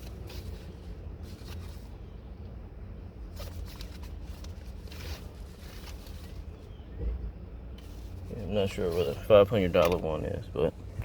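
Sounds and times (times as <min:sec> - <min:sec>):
papers rustling: 0:00.0 - 0:02.0, 0:03.2 - 0:06.7.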